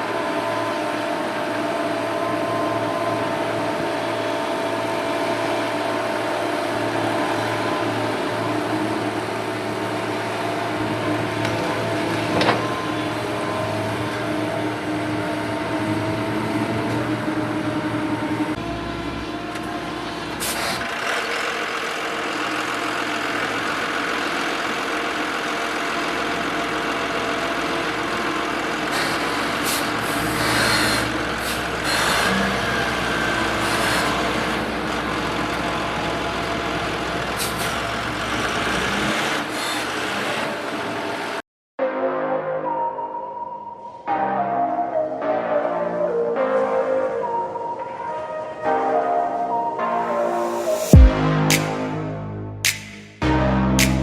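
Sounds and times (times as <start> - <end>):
heavy trucks running: 0.0 - 41.4.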